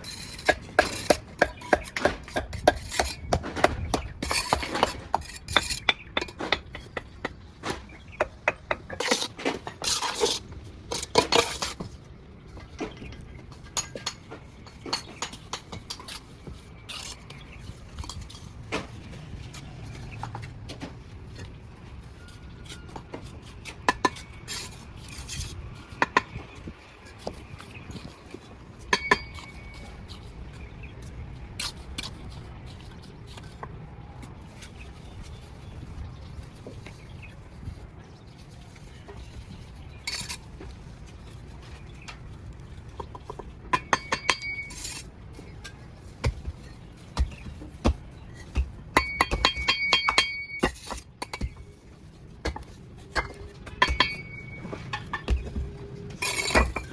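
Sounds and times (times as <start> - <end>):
trowel clinking on bricks: 0.0 - 11.9, 12.6 - 18.5, 22.2 - 30.3, 38.9 - 40.8, 42.9 - 56.9.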